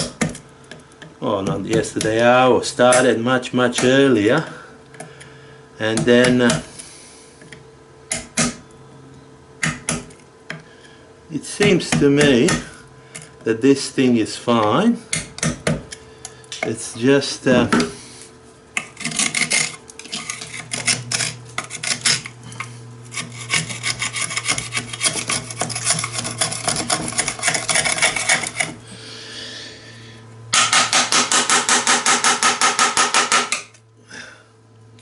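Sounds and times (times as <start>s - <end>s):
hand tool rasping on hard surface: 18.8s - 28.8s.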